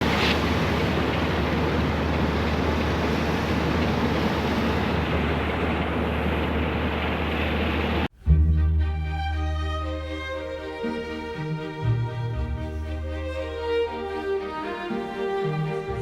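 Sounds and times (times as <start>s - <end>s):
rushing wind and water: 0.0s - 8.1s
low ship engine hum: 0.0s - 16.0s
music with sustained strings: 8.2s - 16.0s.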